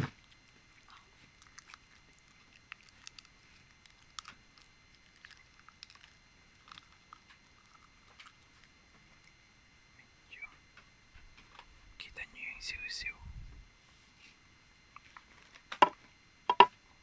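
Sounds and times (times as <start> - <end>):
wet chewing clicks: 0.1 - 9.4.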